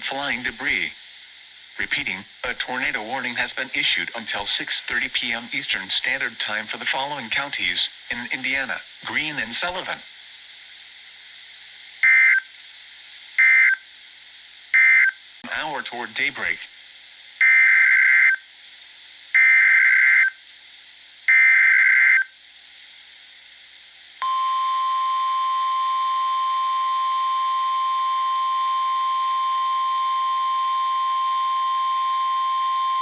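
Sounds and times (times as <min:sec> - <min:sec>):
steady warning alarm tone: 0:12.0 - 0:12.4, 0:13.4 - 0:13.8, 0:14.8 - 0:15.2, 0:17.4 - 0:18.4, 0:19.4 - 0:20.4, 0:21.3 - 0:22.3, 0:24.2 - 0:33.0.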